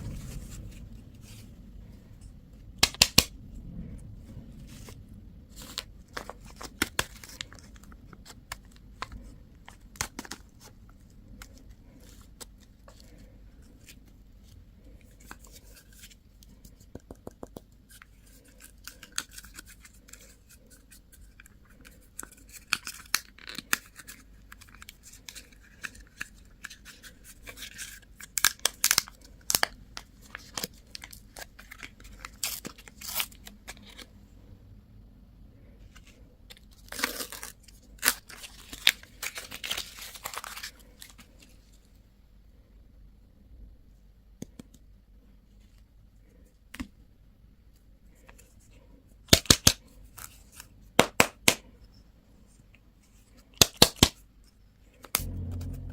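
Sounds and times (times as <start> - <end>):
plastic wrappers crinkling and tearing: 21.3 - 34.1, 36.0 - 41.5.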